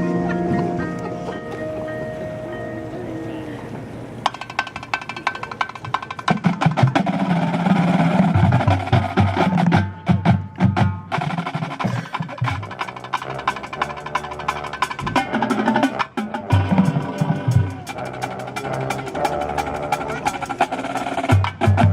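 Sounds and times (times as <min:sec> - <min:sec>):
mallet keyboard notes: 0:00.0 - 0:06.2
rapid drum strokes: 0:04.2 - 0:21.9.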